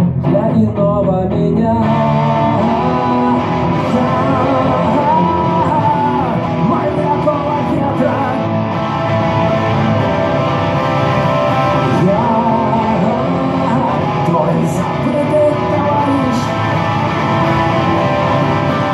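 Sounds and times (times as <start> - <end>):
instrumental rock music: 0.0 - 18.9
wavering lead guitar melody: 0.0 - 18.9.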